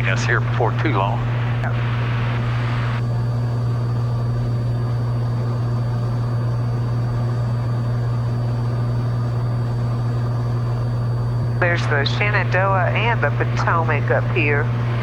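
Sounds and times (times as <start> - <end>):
airplane engine drone: 0.0 - 15.0.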